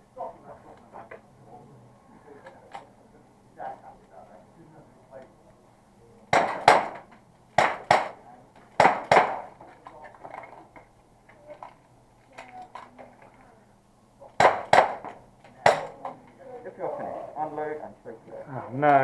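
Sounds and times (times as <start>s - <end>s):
airsoft revolver shots: 6.3s - 7.0s, 7.6s - 8.2s, 8.8s - 9.5s, 14.4s - 16.0s.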